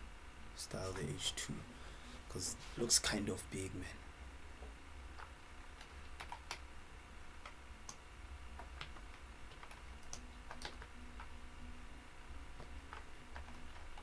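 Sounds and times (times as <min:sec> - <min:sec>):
low hum: 0:00.0 - 0:06.1.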